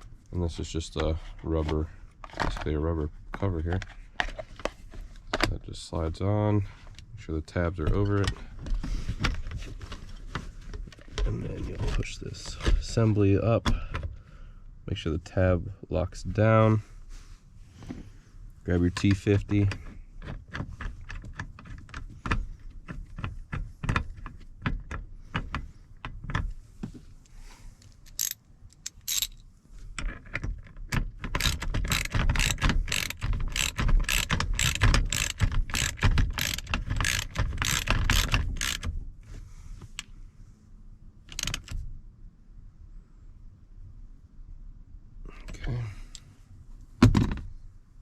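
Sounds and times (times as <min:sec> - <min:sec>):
hand ratchet clicking: 0:28.1 - 0:29.4, 0:31.3 - 0:38.9, 0:41.3 - 0:41.7.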